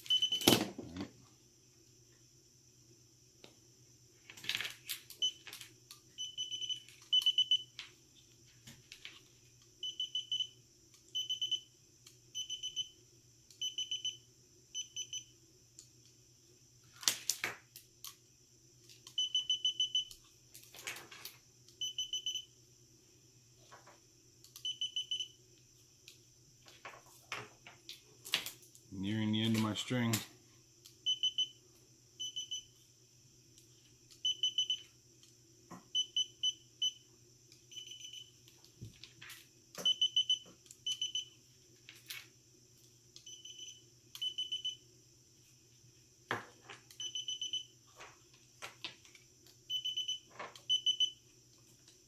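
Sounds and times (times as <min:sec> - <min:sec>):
light tester beeping: 0:00.0 - 0:00.6, 0:05.2 - 0:05.4, 0:06.1 - 0:07.8, 0:09.8 - 0:15.3, 0:19.0 - 0:20.3, 0:21.7 - 0:22.5, 0:24.4 - 0:25.4, 0:30.8 - 0:31.6, 0:32.2 - 0:32.8, 0:34.1 - 0:35.3, 0:35.9 - 0:38.5, 0:39.8 - 0:41.4, 0:43.2 - 0:44.8, 0:46.9 - 0:47.8, 0:49.7 - 0:51.2.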